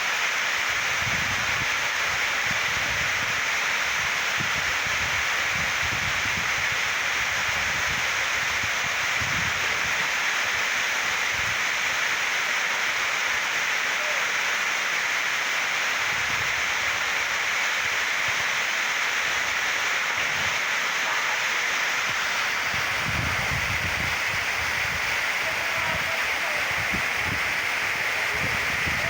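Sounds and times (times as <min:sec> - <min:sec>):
waterfall rushing: 0:00.0 - 0:29.0
wind buffeting microphone: 0:04.4 - 0:10.0, 0:20.2 - 0:20.6, 0:22.0 - 0:29.0.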